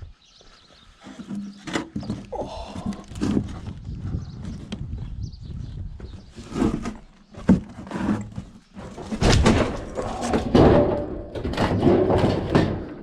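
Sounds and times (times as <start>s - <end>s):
metal clattering and scraping: 6.3s - 13.0s.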